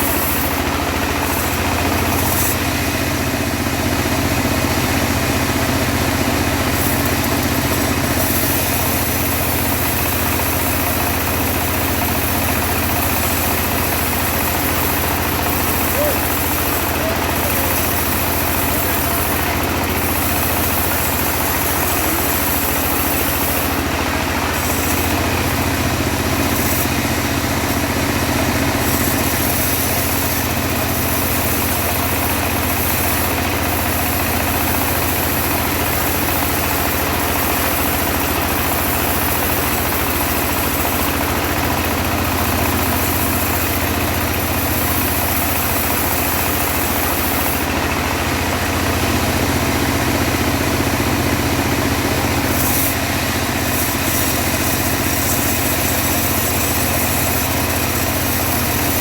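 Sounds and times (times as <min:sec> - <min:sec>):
sawmill engine running: 0:00.0 - 0:59.0.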